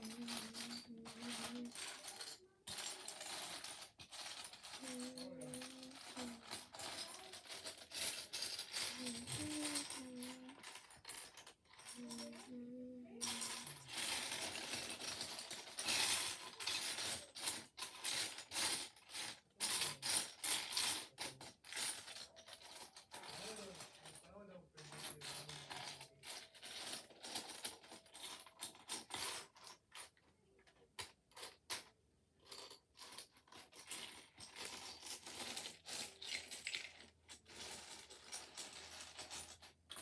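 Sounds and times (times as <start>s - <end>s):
plastic bricks rattling and clicking: 0.0s - 12.5s, 33.2s - 39.6s.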